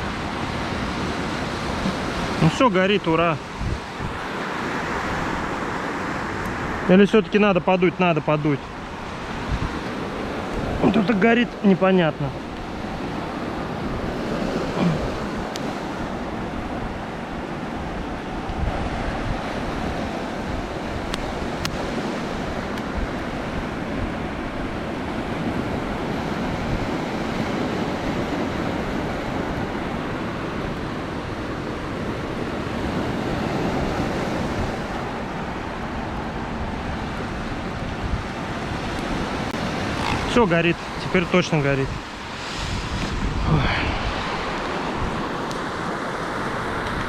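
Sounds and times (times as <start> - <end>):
wind rumbling on microphone: 0.0 - 6.9, 8.6 - 11.6, 12.2 - 47.0
sea surf: 0.0 - 47.0.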